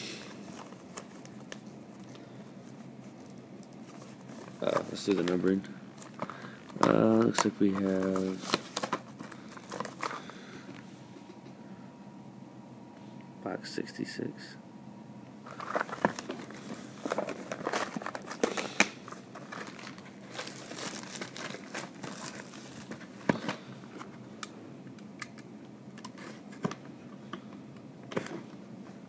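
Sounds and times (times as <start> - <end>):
wrapper crinkling and tearing: 3.0 - 10.3, 15.4 - 23.7.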